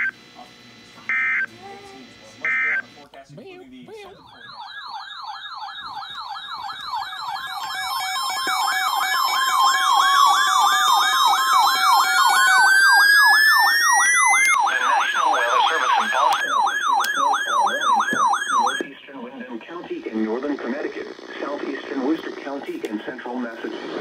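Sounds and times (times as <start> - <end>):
warbling siren yelp: 4.0 - 19.0
rising siren tone: 4.2 - 18.9.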